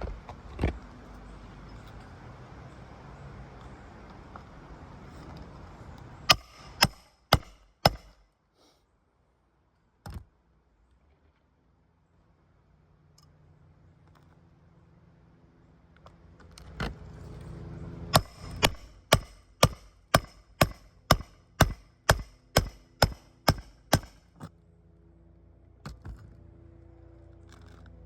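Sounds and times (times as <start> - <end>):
hammer driving nails into shingle: 6.3 - 8.2, 18.1 - 24.5.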